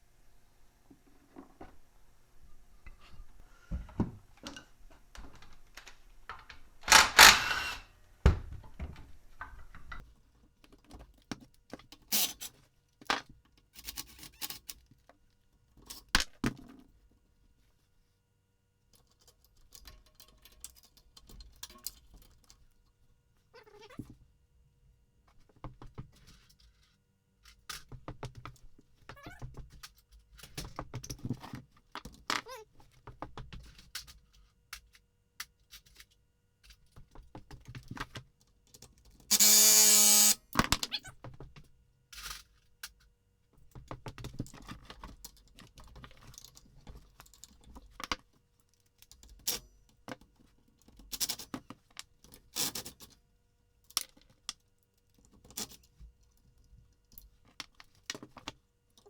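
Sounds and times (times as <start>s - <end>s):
loud burst: 6.8s - 7.8s.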